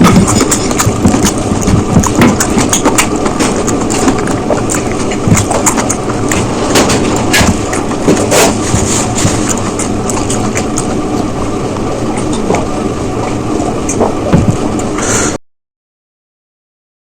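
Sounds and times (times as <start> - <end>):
person chewing food: 0.0 - 15.3.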